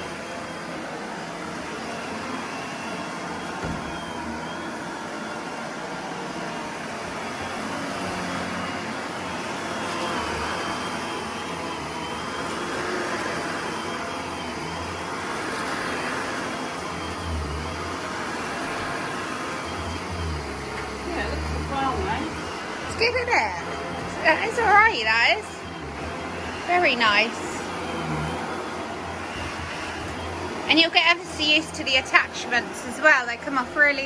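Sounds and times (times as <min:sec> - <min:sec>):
vacuum cleaner motor whine: 0:00.0 - 0:34.0.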